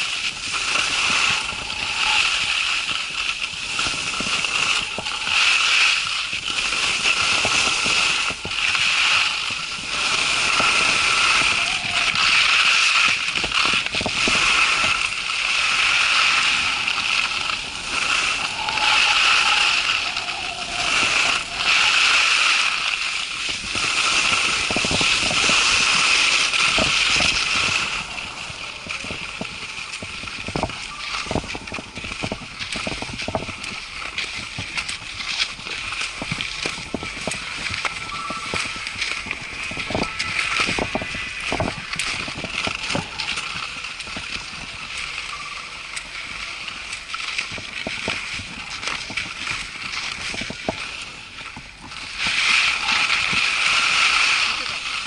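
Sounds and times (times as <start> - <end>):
gusty wind buffeting microphone: 0.0 - 55.0
high wind whistle: 16.5 - 22.4.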